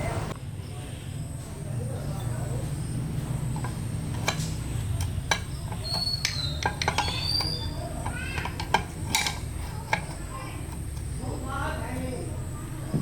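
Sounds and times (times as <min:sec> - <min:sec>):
sharp clicks and clinks: 0:03.5 - 0:11.2.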